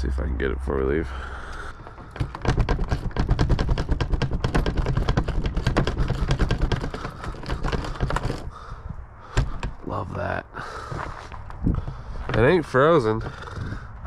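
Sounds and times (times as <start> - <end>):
lock clicking and rattling: 1.4 - 8.6, 9.3 - 9.8.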